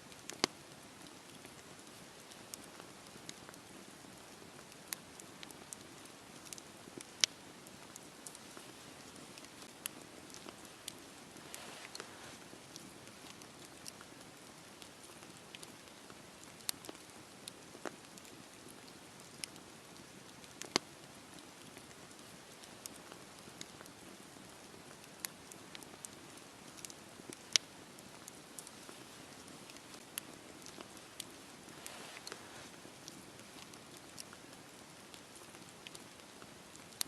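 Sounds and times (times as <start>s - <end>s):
campfire crackling and popping: 0.0s - 37.0s
fire hissing: 1.9s - 14.6s, 28.2s - 36.1s.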